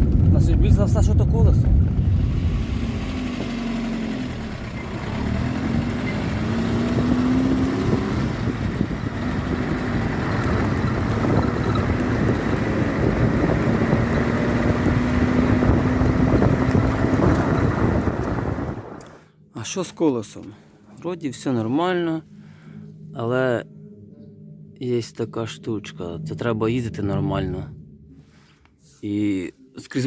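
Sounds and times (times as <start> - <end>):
car engine running: 0.0 - 19.2
road noise: 0.0 - 19.2.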